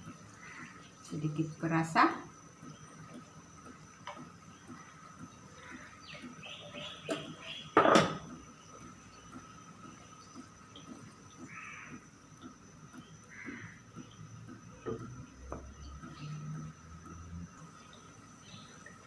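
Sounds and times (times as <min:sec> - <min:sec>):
distant bird calls: 0:02.6 - 0:16.8
utensil clattering against pot: 0:07.1 - 0:08.3.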